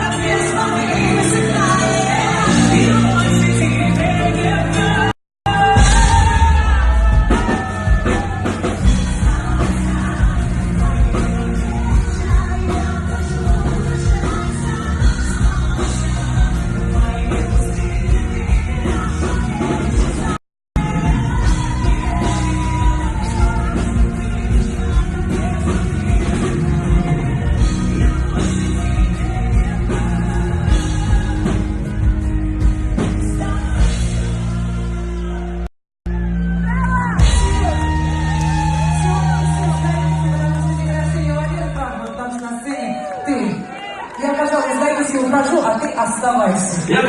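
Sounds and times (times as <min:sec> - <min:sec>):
man singing: 0:00.0 - 0:32.0
pop-rock band playing: 0:00.0 - 0:47.0.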